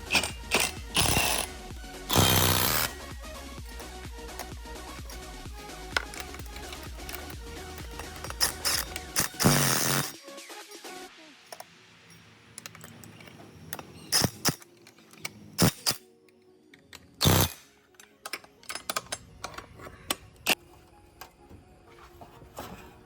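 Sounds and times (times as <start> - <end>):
sharp clicks and knocks: 0.0 - 10.2
background music: 0.0 - 23.0.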